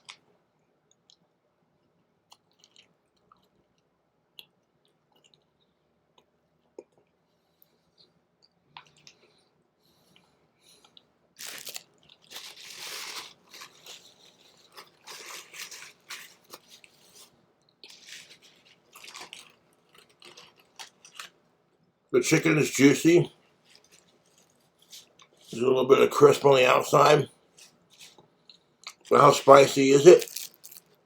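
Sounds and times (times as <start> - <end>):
crunchy chewing: 2.3 - 3.8, 4.4 - 21.5, 23.3 - 25.6, 27.5 - 29.2, 30.2 - 31.0.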